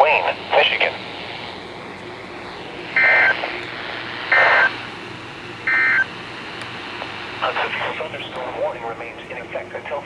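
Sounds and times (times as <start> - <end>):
radio hiss: 0.0 - 1.6, 2.8 - 4.9, 6.8 - 10.0.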